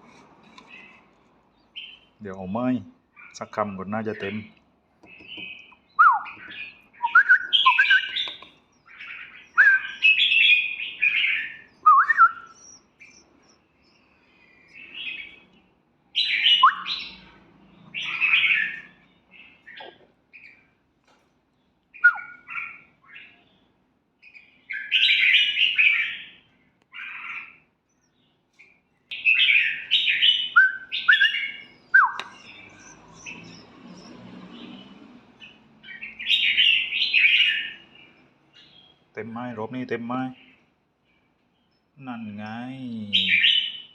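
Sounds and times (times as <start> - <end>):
bulbul singing whistled notes: 5.2 - 15.4, 16.2 - 17.2, 22.0 - 22.5, 29.2 - 34.2.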